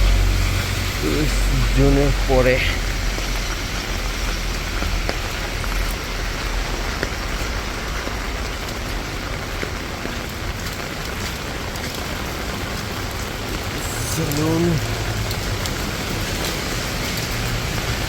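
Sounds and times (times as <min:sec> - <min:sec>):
rain falling steadily: 0:00.0 - 0:18.0
sharp ticks of raindrops: 0:00.0 - 0:18.0.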